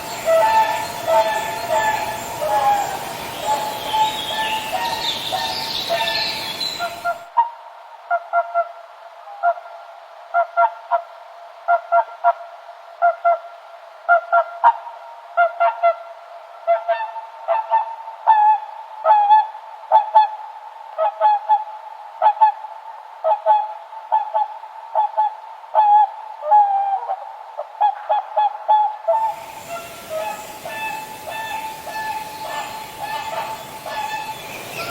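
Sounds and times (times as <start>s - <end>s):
swans honking: 0.0s - 7.0s, 29.2s - 34.9s.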